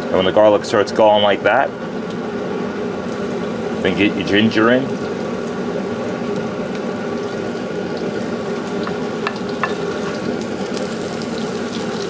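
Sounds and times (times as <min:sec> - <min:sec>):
faint hum: 0:00.0 - 0:12.0
garlic sizzling in oil: 0:01.8 - 0:12.0
utensil clicking on pan: 0:08.7 - 0:10.4.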